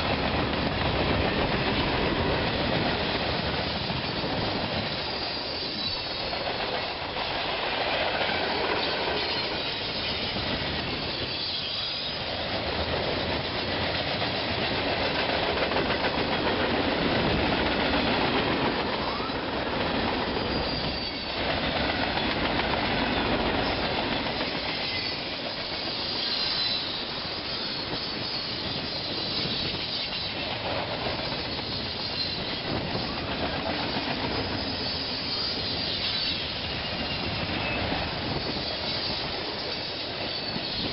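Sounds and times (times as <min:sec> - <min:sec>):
train wheels clattering on rails: 0:00.0 - 0:40.9
high wheel squeals: 0:03.6 - 0:07.1, 0:08.5 - 0:12.4, 0:20.3 - 0:21.5, 0:23.0 - 0:40.9.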